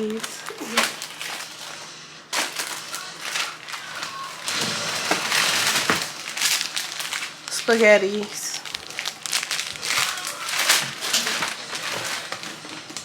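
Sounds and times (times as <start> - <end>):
grocery bags rustling and crinkling: 0.0 - 13.0.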